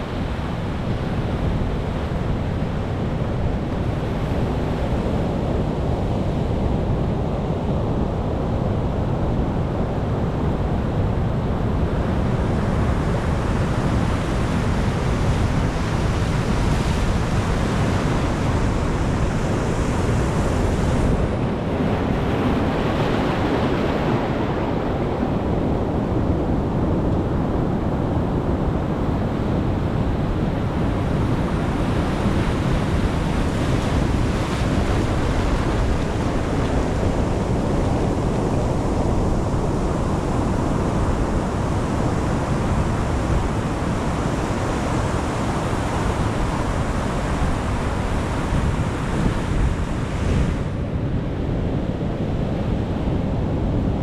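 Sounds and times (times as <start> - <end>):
ocean waves breaking: 11.9 - 27.5, 29.0 - 51.8.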